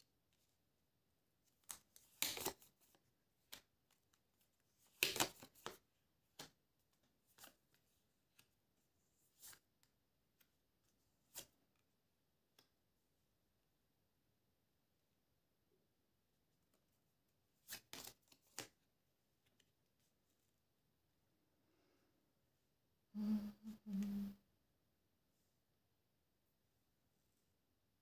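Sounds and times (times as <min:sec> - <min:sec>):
cards being shuffled: 0:01.5 - 0:08.5, 0:09.3 - 0:11.9, 0:17.5 - 0:20.3.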